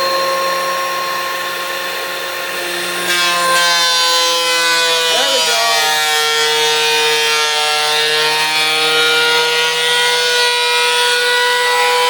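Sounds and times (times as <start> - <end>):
thickness planer planing wood: 2.5 - 12.0.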